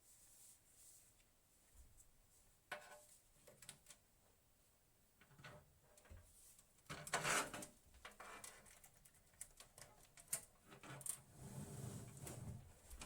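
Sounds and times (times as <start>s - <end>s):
rustle or scrape: 0.0s - 3.3s, 11.2s - 13.0s
small clicks and taps: 8.0s - 11.2s.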